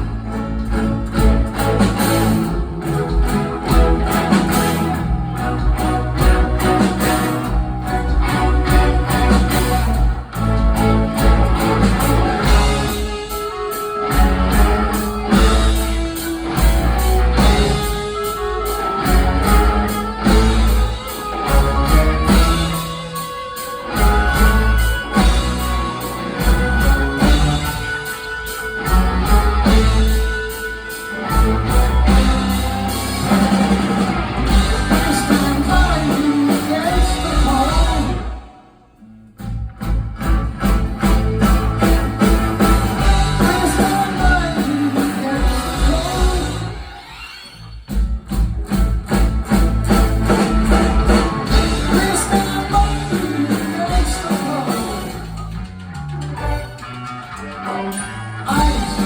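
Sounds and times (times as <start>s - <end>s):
bass guitar: 0.0s - 38.5s, 39.3s - 46.9s, 47.9s - 59.0s
drum kit: 0.0s - 38.5s, 39.4s - 59.0s
electric guitar: 0.0s - 38.6s, 39.4s - 47.2s, 47.9s - 59.0s
rock band playing: 0.0s - 59.0s
person singing: 34.5s - 38.6s, 42.8s - 46.9s, 51.4s - 55.4s, 57.6s - 59.0s.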